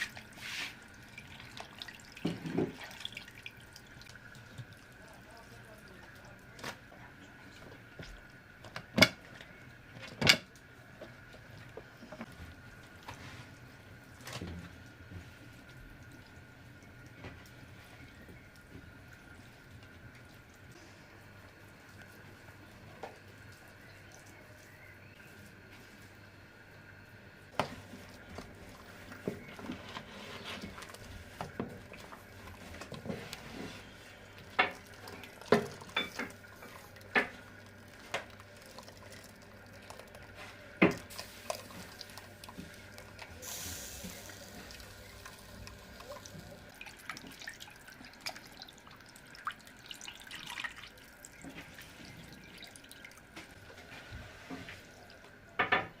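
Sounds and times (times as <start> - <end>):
water dripping and splashing: 0.0 - 6.6, 27.5 - 53.8.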